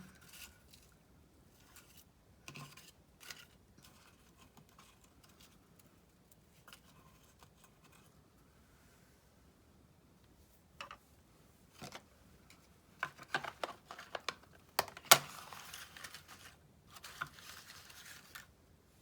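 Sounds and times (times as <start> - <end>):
paper rustling and clicking: 13.0 - 18.5.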